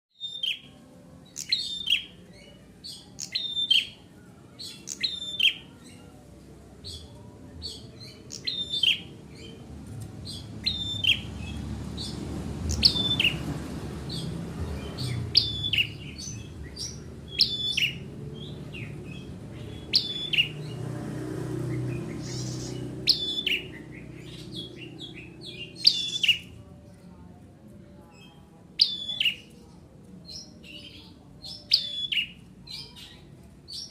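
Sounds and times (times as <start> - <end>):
bird chirping: 0.1 - 6.2, 6.8 - 9.6, 10.2 - 20.8, 21.5 - 26.8.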